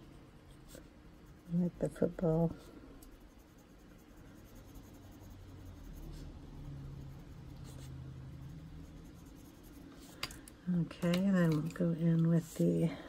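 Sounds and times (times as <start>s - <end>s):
pencil scratching on paper: 0.6s - 10.2s.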